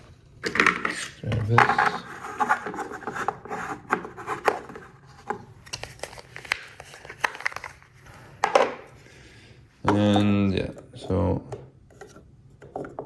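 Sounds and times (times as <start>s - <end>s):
rubbing and scraping: 0.7s - 5.2s.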